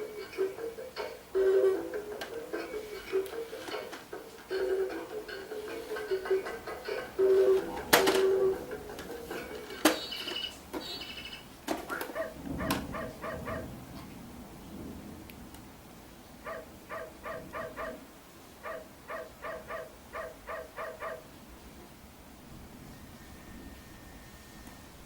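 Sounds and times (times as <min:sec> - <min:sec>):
toy bird chirping: 0:09.8 - 0:12.2.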